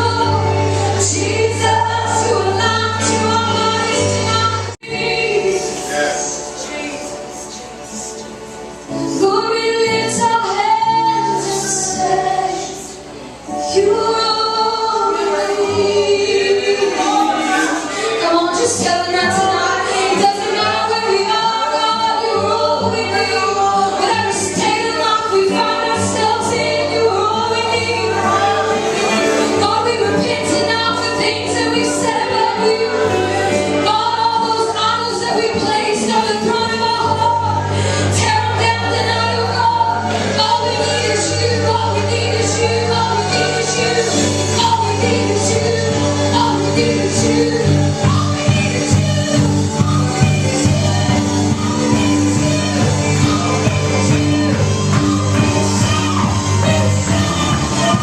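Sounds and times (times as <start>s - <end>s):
voices singing along: 0.0s - 8.2s, 8.9s - 58.0s
woman singing worship song: 0.0s - 58.0s
held bass notes: 22.5s - 58.0s.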